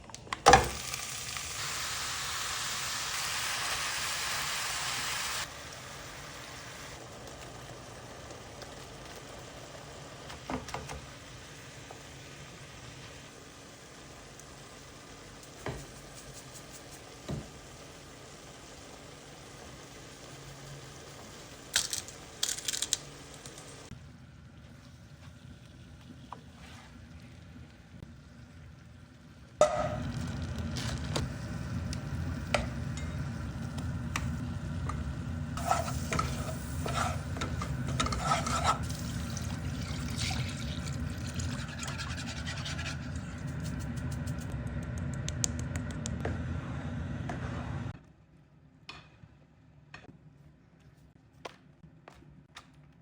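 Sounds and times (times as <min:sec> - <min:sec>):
food stirred and scraped in pan: 0:35.6 - 0:39.3.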